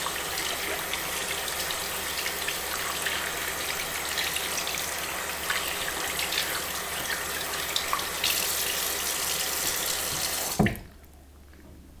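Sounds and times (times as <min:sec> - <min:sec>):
tap water running into sink: 0:00.0 - 0:11.0
tap shutting thump: 0:10.1 - 0:10.8.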